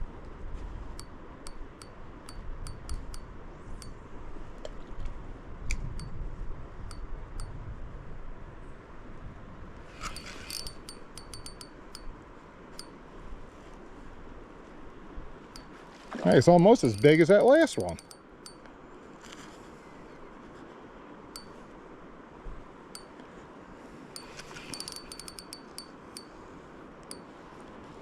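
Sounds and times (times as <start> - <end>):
low rumble of wind or water: 0.0 - 28.0
fishing reel drag clicking: 1.5 - 3.2, 10.0 - 12.0, 16.8 - 17.2, 17.8 - 18.2, 24.2 - 26.3.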